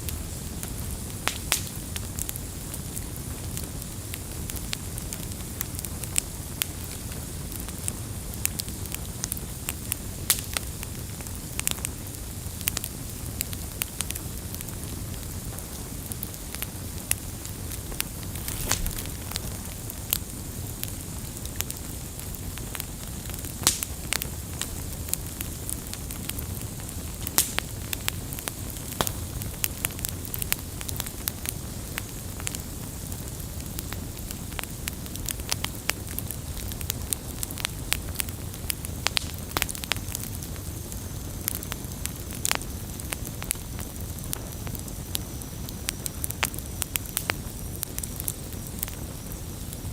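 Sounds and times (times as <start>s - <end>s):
burning wood crackling and popping: 0.0s - 49.9s
low rumble of flames: 0.0s - 49.9s.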